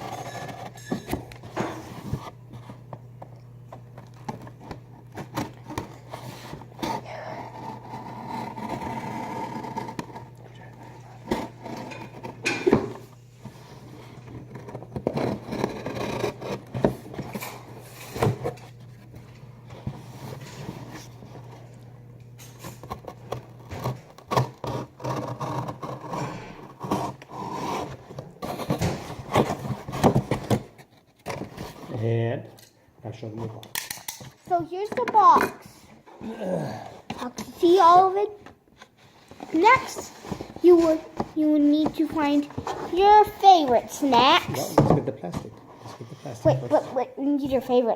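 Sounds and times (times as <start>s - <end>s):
steady low hum: 0.0s - 30.8s
box cutter cutting cardboard: 5.2s - 10.3s, 14.4s - 18.6s, 22.8s - 31.6s.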